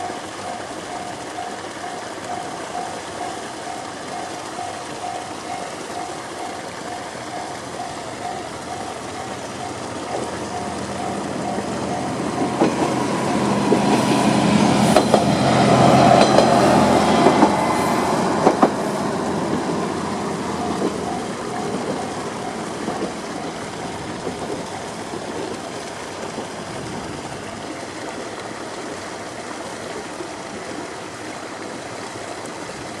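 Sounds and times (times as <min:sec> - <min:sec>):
level crossing alarm ringing: 0:00.0 - 0:13.5, 0:20.3 - 0:24.9
diesel railcar engine and wheels: 0:00.0 - 0:33.0
wheel clacks over rail joints: 0:01.0 - 0:26.6.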